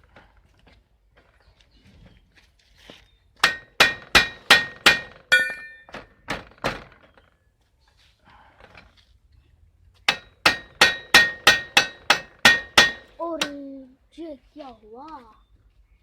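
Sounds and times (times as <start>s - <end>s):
hammer striking metal: 3.4s - 6.0s, 10.1s - 13.6s.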